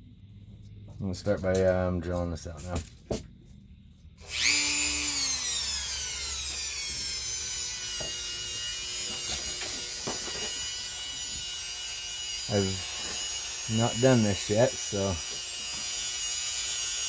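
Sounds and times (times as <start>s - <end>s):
power drill whining: 4.2s - 17.0s.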